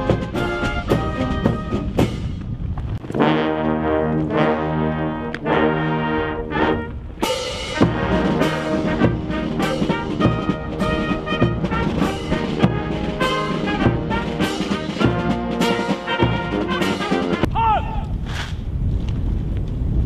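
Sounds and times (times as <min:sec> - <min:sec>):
brass band playing: 0:00.0 - 0:02.3, 0:03.1 - 0:17.5
drum hits: 0:07.2 - 0:17.5.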